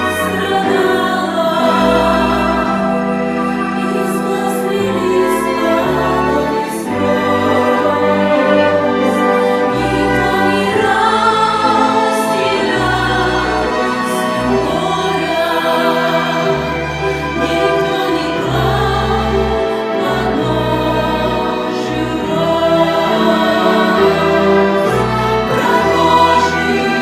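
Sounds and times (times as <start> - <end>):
bass accompaniment: 0.0 - 27.0
choir singing slow sustained lines: 0.0 - 27.0.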